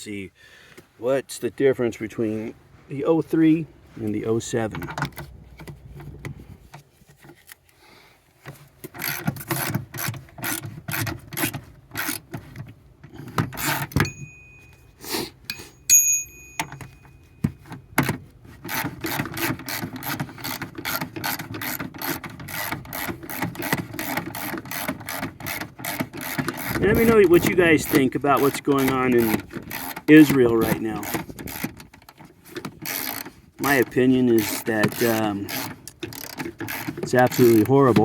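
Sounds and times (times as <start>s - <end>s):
ratchet wrench clicking: 9.0s - 12.2s, 18.7s - 30.2s, 31.0s - 32.0s, 32.8s - 37.8s
high ringing tones: 14.0s - 17.6s.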